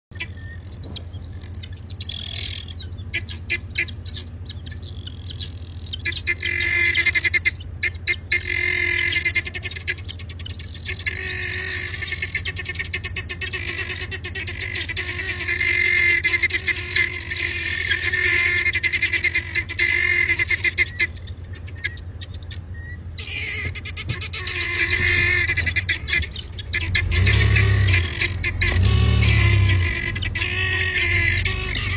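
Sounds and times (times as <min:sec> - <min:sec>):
birds alarm calls: 0:00.1 - 0:31.9
low steady hum: 0:00.1 - 0:31.9.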